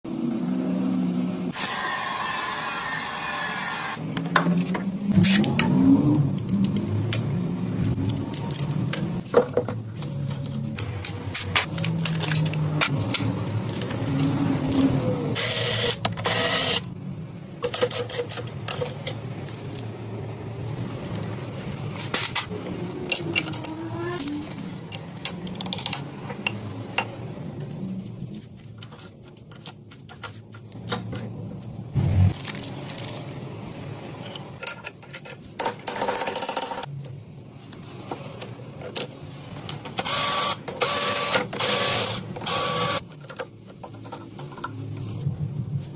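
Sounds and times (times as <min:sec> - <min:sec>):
metal parts clicking and scraping: 0:04.5 - 0:17.0, 0:17.6 - 0:31.7, 0:34.1 - 0:36.9.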